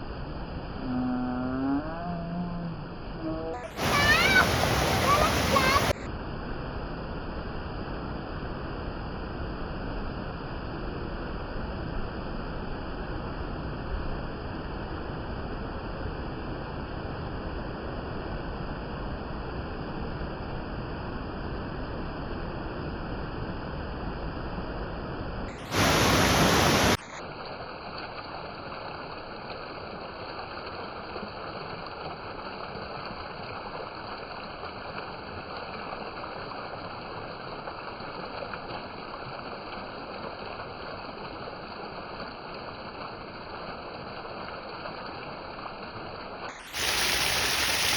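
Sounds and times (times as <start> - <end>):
waterfall rushing: 3.6 - 6.1, 25.6 - 27.2, 46.6 - 47.9.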